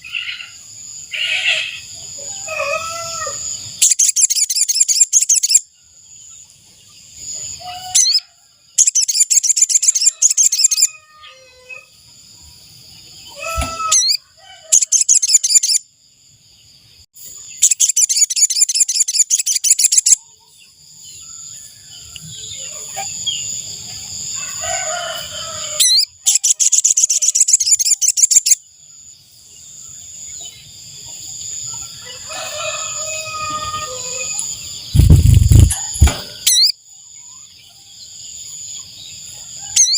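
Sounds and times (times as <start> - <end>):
bird high-pitched trilling: 3.8 - 5.7, 7.6 - 11.8, 13.3 - 15.8, 17.5 - 20.2, 25.6 - 28.6, 33.0 - 36.8
low thud: 35.0 - 36.4.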